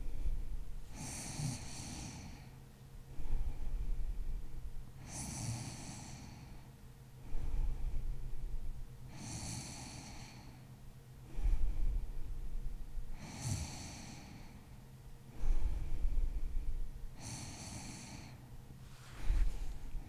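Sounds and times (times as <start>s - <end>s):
woman snoring: 0.9s - 2.5s, 5.0s - 6.5s, 9.1s - 10.5s, 13.2s - 14.6s, 17.2s - 18.4s.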